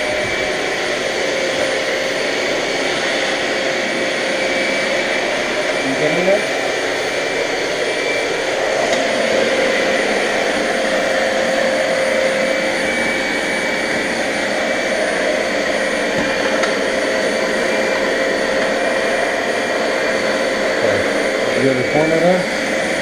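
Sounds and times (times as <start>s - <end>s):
vacuum cleaner running: 0.0s - 23.0s.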